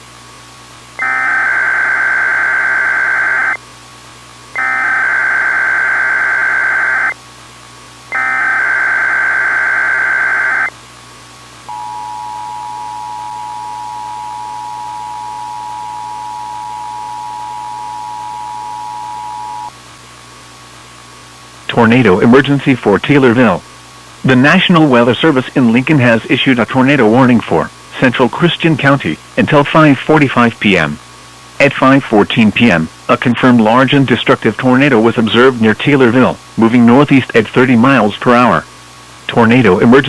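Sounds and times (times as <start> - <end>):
harsh buzzing data bursts: 1.0 - 3.6, 4.6 - 7.2, 8.1 - 10.7
two-tone attention signal: 1.0 - 3.6, 4.6 - 7.1, 8.1 - 10.7.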